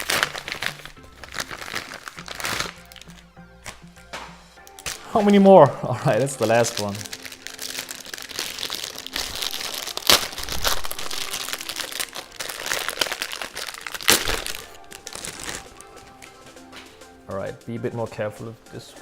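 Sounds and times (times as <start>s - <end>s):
packaging crinkling and rustling: 0.0s - 3.3s, 6.1s - 16.1s.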